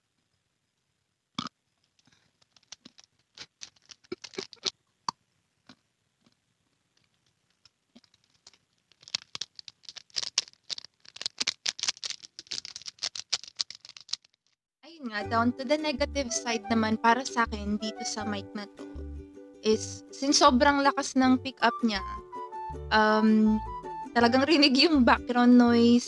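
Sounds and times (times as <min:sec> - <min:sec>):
paper banknotes crinkling: 0:02.0 - 0:04.7, 0:07.0 - 0:14.6.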